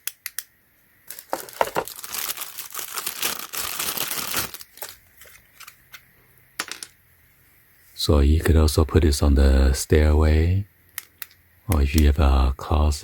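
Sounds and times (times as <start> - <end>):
sharp clicks: 0.0 - 0.5
packaging crinkling and rustling: 1.0 - 6.0.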